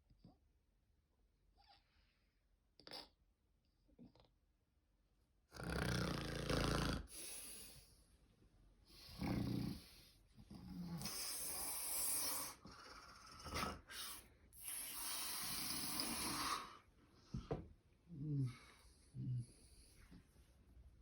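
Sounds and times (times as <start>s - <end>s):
man snoring: 5.5s - 7.2s, 9.1s - 9.9s.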